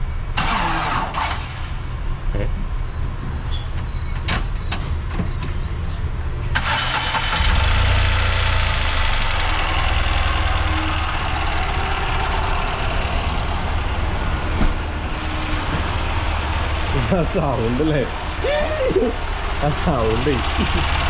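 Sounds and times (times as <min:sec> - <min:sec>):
car engine idling: 0:06.6 - 0:21.0.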